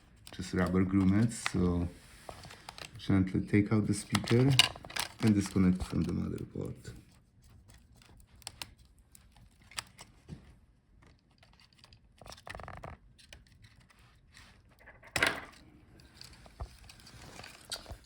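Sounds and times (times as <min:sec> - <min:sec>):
plastic parts clicking and scraping: 0:00.0 - 0:03.1, 0:03.8 - 0:18.0
rustling scrape: 0:01.0 - 0:02.9.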